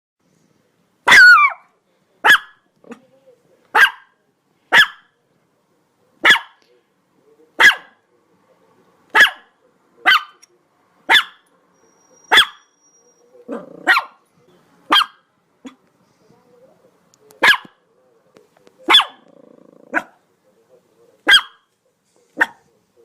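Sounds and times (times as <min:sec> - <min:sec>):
dog barking: 0:01.0 - 0:03.0, 0:03.7 - 0:05.2, 0:06.2 - 0:06.6, 0:07.6 - 0:08.0, 0:09.1 - 0:10.4, 0:11.1 - 0:11.4, 0:12.3 - 0:12.7, 0:13.5 - 0:14.2, 0:14.9 - 0:15.8, 0:17.4 - 0:17.8, 0:18.9 - 0:19.3, 0:19.9 - 0:20.2, 0:21.2 - 0:21.7, 0:22.4 - 0:22.7.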